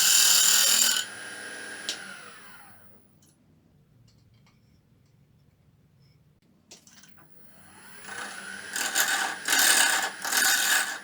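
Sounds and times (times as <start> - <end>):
lathe motor whine: 0.0 - 2.8, 7.4 - 11.0
tool scraping spinning wood: 7.9 - 11.0.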